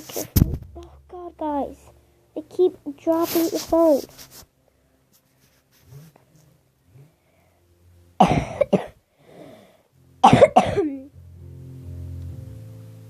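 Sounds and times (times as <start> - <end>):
person coughing: 8.2 - 9.0, 10.2 - 11.1.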